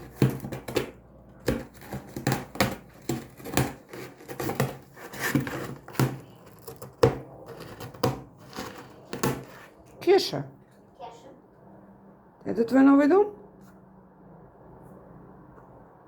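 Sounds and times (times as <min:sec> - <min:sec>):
cat scratching cardboard box: 0:00.0 - 0:09.9.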